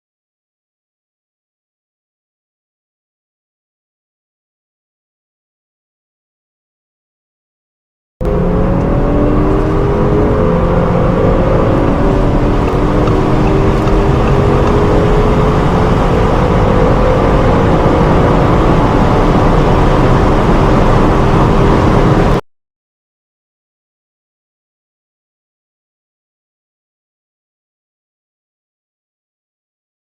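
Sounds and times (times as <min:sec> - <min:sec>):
car engine accelerating hard: 0:08.2 - 0:22.4
road and wind rumble: 0:08.2 - 0:22.4.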